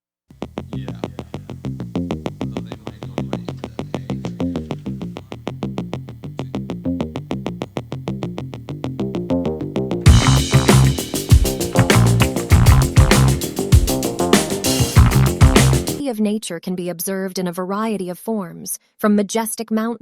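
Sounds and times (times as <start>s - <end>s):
band with heavy bass and drums: 10.0s - 16.0s
repeated synthesizer notes: 10.1s - 16.0s.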